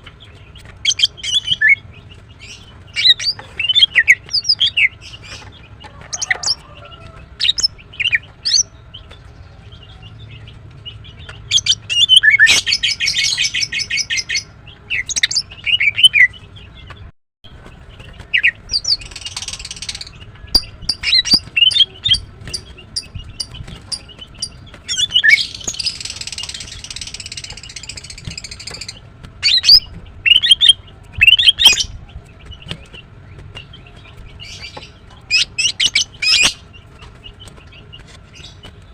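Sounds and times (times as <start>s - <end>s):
bird chirping: 0.0s - 38.9s
bird buzzy rattling trills: 17.6s - 38.9s.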